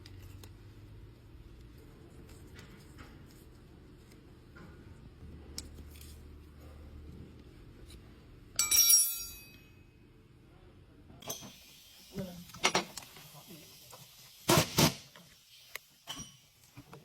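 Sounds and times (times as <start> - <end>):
sharp metallic clink: 8.6 - 9.8.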